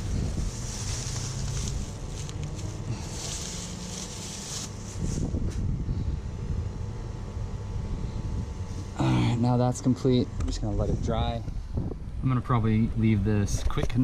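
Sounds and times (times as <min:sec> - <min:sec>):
wind rumble on microphone: 0:00.0 - 0:02.2, 0:04.9 - 0:08.9, 0:10.6 - 0:14.0.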